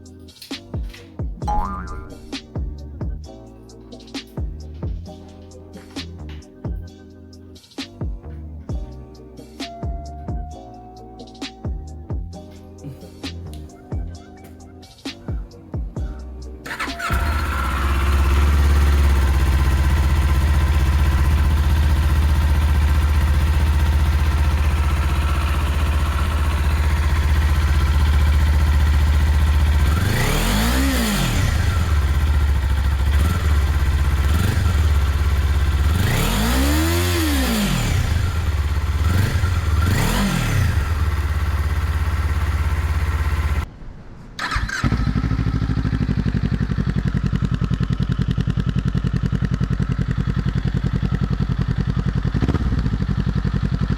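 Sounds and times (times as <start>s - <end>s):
motorcycle engine idling: 15.3s - 43.7s, 44.4s - 53.9s
engine revving: 16.7s - 43.7s.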